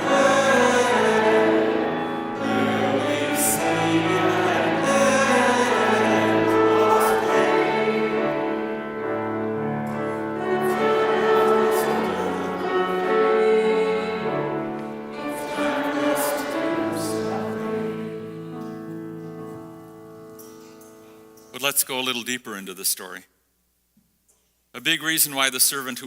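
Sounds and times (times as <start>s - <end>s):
voices singing with accompaniment: 0.0s - 19.2s.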